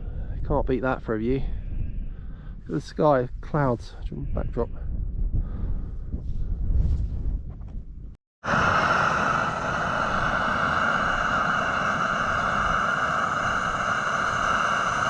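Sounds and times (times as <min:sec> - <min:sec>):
wind rumble on microphone: 0:00.0 - 0:15.0
gas camping stove hissing: 0:08.4 - 0:15.0.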